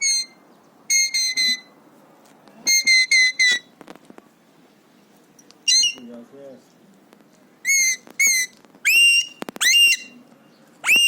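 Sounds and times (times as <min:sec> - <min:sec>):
parakeet shrill calls: 0:00.0 - 0:01.7, 0:02.7 - 0:03.7, 0:05.7 - 0:06.1, 0:07.6 - 0:10.2.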